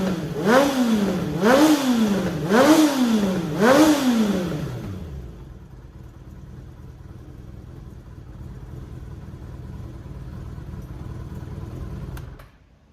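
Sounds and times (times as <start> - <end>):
motorcycle engine idling: 4.7 - 12.4.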